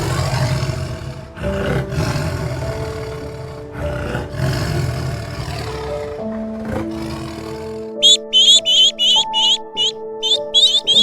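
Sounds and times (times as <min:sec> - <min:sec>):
large animal roaring: 0:00.0 - 0:08.4
soft background music: 0:00.0 - 0:11.0.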